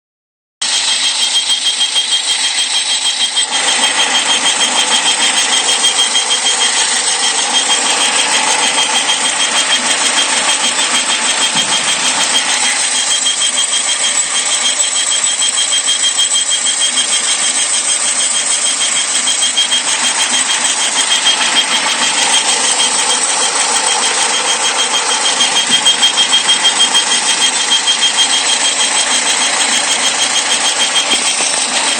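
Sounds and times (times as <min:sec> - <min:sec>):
high-pitched whistle: 0:00.6 - 0:31.9
car engine running: 0:02.4 - 0:31.9.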